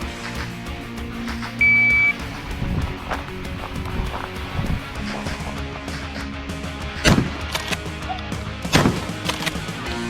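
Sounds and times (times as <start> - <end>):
background music: 0.0 - 10.0
shotgun pump clacks: 1.2 - 8.2, 8.8 - 9.8
shotgun firing: 7.0 - 7.9, 8.7 - 9.6.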